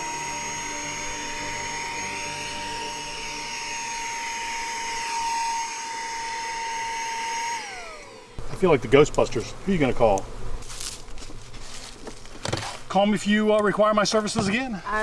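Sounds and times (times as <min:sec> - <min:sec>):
handheld vacuum running: 0:00.0 - 0:08.5.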